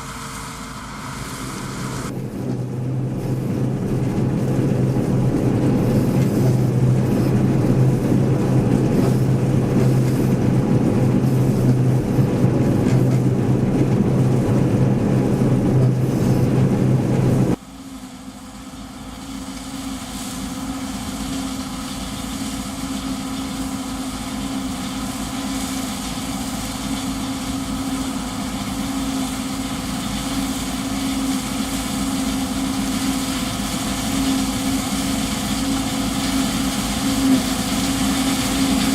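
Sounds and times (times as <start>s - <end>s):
combine harvester droning: 0.0s - 38.9s
higher-pitched machine hum: 0.0s - 38.9s.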